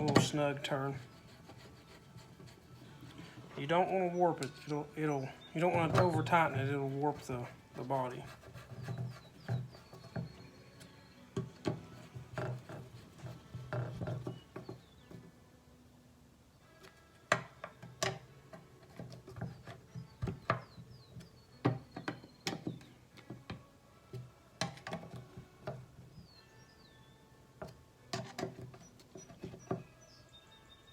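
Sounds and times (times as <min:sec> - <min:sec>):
hand tools clicking and tapping: 0:00.0 - 0:15.4, 0:16.8 - 0:27.0, 0:27.6 - 0:30.1.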